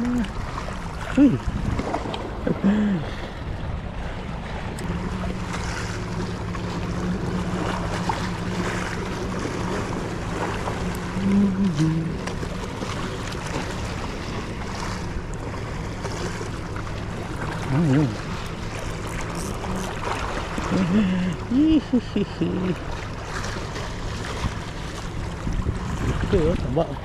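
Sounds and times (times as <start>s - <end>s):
low engine hum: 0.0s - 27.0s
sea waves: 0.0s - 27.0s
brief vocal sound: 11.2s - 12.2s
wind noise on microphone: 25.4s - 26.7s.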